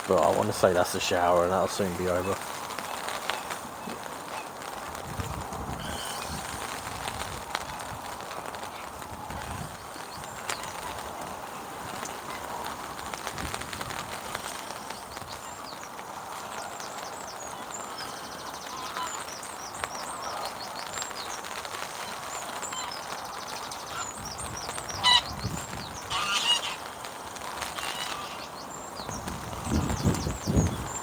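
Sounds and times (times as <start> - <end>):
heavy rain on an umbrella: 0.0 - 31.0
small birds chirping: 0.0 - 31.0
goose honking: 25.0 - 25.3, 26.1 - 26.9, 27.8 - 28.5.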